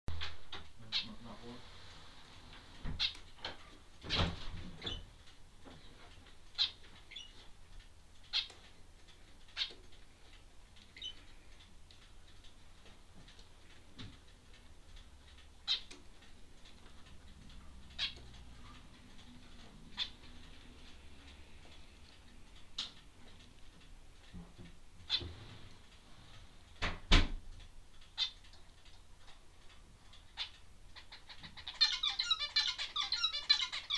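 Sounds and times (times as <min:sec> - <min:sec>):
small bird chirping: 0:00.1 - 0:01.6, 0:02.9 - 0:03.4, 0:04.1 - 0:07.6, 0:08.2 - 0:08.7, 0:09.4 - 0:11.5, 0:15.6 - 0:23.6, 0:25.0 - 0:25.4, 0:28.0 - 0:28.6, 0:30.2 - 0:33.9.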